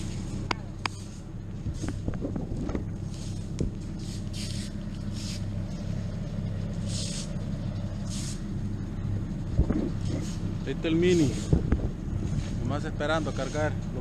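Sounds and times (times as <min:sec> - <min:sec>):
engine running steadily: 0:00.0 - 0:14.0
short bursts of hiss: 0:04.0 - 0:05.6, 0:06.8 - 0:07.4, 0:08.0 - 0:08.5.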